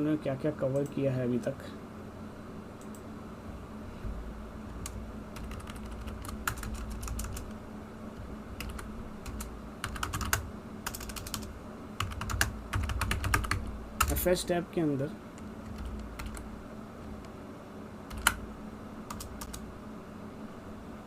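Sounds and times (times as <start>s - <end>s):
computer keyboard typing: 4.8s - 7.6s, 8.6s - 14.2s, 15.4s - 16.5s, 18.1s - 18.4s, 19.1s - 19.6s.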